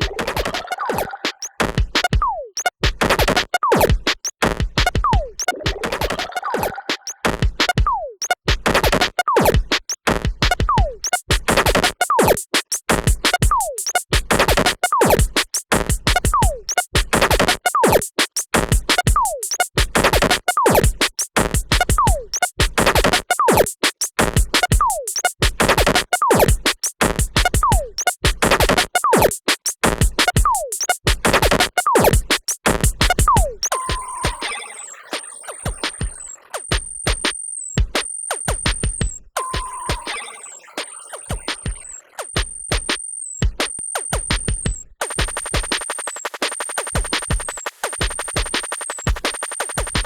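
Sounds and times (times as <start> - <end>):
electronic drum-machine beat: 0.0 - 50.0.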